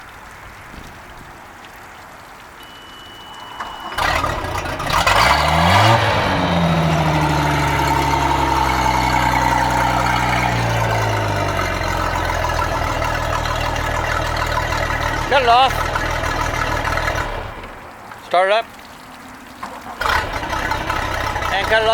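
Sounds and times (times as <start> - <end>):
thin steady tone: 2.6 - 15.8
boat engine starting and idling: 2.6 - 21.9.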